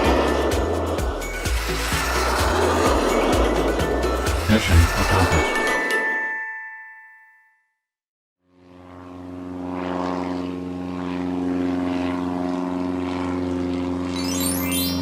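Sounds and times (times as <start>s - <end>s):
steady engine drone: 0.0s - 5.6s, 8.6s - 15.0s
chime ringing: 1.4s - 7.4s, 14.2s - 15.0s.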